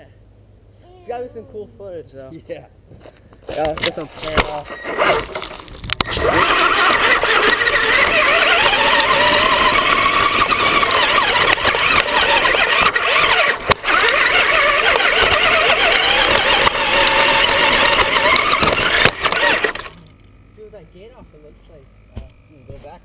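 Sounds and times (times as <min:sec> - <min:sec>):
rough rushing noise: 0:04.0 - 0:20.0
electric motor whine: 0:04.3 - 0:20.4.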